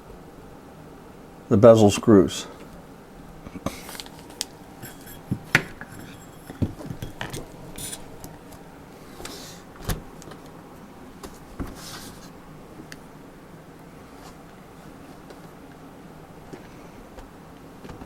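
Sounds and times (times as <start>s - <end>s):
soft scuffs: 11.2s - 12.4s.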